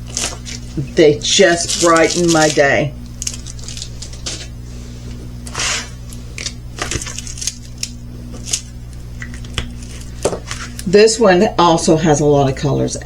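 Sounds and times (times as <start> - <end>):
plastic bags crinkling: 0.0 - 4.6, 5.4 - 10.8
plastic bag rustle: 0.0 - 8.8, 9.4 - 10.8
low hum: 0.0 - 13.0.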